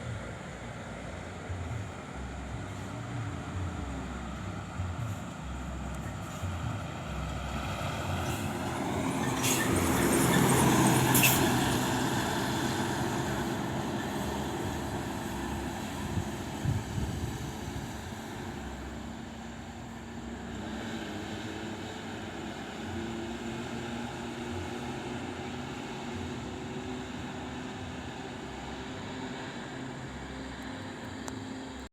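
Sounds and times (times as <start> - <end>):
bus passing: 0.0 - 31.9
traffic noise: 0.0 - 31.9
air brake hiss: 9.4 - 10.2, 11.0 - 11.7.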